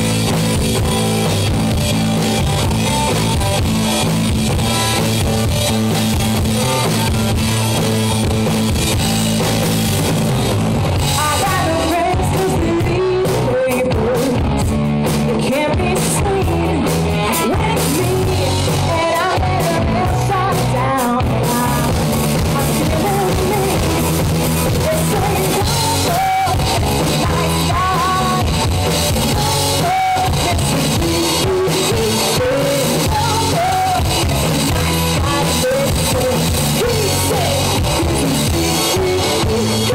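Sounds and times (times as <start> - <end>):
drum kit: 0.0 - 39.9
electric guitar: 0.0 - 39.9
lead vocal singing: 11.2 - 14.6, 15.5 - 39.9.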